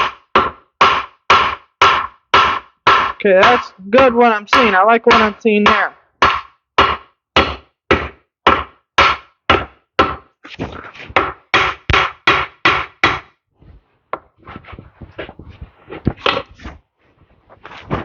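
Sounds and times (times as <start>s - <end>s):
hammer striking metal: 0.0s - 10.2s.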